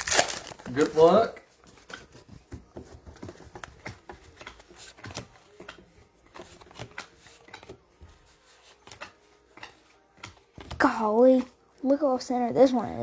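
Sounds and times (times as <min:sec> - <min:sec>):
trading cards flipped by hand: 0:03.5 - 0:07.8, 0:08.4 - 0:10.8.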